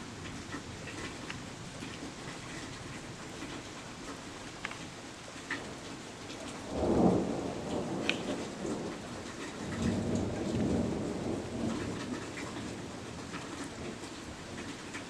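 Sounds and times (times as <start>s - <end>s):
rain pattering and dripping: 0.0s - 15.0s
thunder rumbling: 6.4s - 14.1s.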